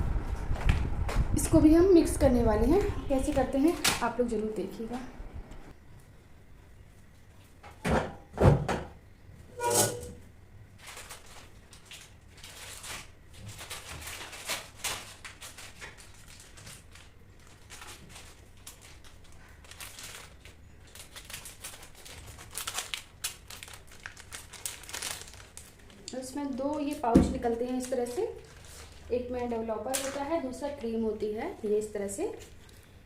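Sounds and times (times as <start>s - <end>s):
packaging crinkling and rustling: 10.7s - 31.0s.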